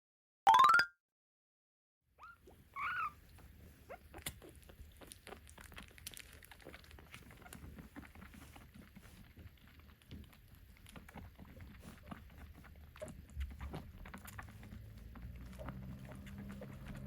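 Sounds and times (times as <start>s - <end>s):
kitten mewing: 2.2s - 3.2s
faint ticks and scratches: 2.3s - 17.0s.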